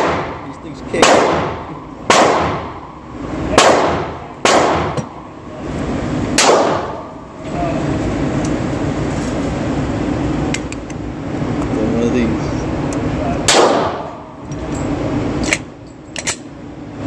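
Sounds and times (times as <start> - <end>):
pistol shots: 0.0 - 0.4, 1.0 - 2.7, 3.5 - 5.1, 6.4 - 7.1, 13.5 - 14.2
fan-like rushing noise: 0.0 - 17.0.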